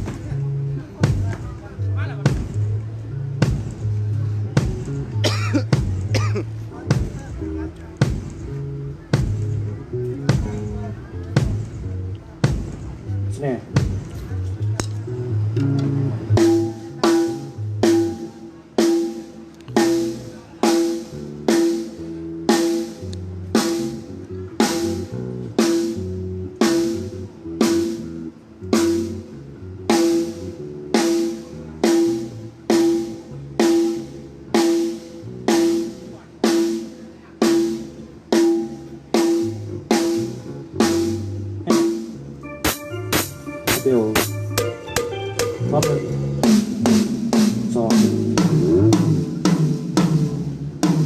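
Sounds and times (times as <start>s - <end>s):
low bass line: 0.0s - 18.6s, 19.3s - 36.4s, 37.9s - 51.0s
pitched drum steady beat: 0.0s - 51.0s.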